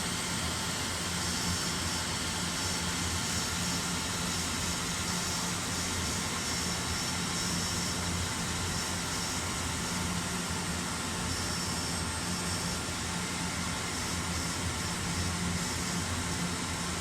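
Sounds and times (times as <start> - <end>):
machine running with low hum: 0.0 - 17.0.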